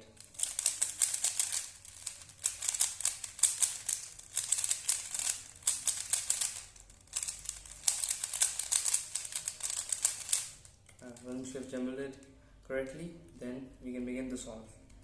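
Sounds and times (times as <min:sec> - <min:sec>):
plastic puzzle cube clicking: 0:00.2 - 0:10.7.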